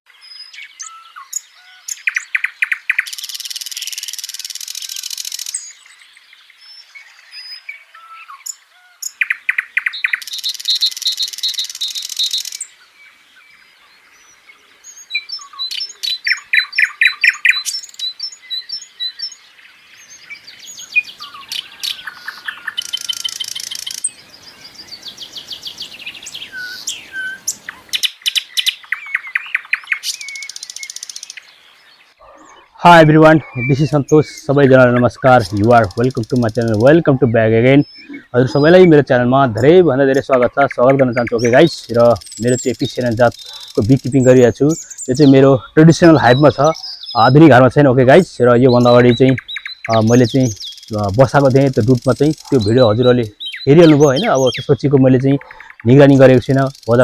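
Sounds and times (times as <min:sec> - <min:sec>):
birds chirping and singing: 0:00.1 - 0:57.0.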